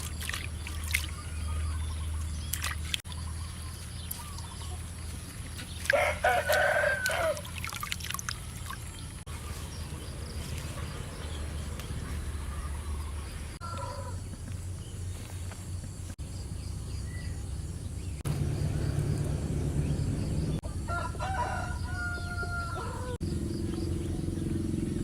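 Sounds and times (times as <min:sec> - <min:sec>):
rooster crowing: 0:05.9 - 0:07.4, 0:13.6 - 0:14.2, 0:20.6 - 0:23.2
steady low rumble: 0:14.2 - 0:20.9.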